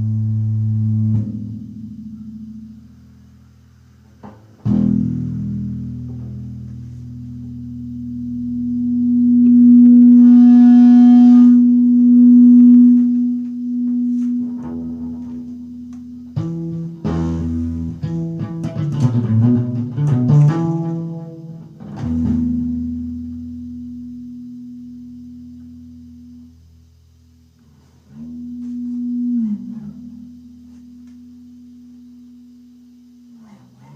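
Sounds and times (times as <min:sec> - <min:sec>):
picked guitar notes: 0:04.2 - 0:24.1, 0:27.7 - 0:33.9
electric guitar feedback: 0:04.6 - 0:26.8, 0:27.6 - 0:33.9.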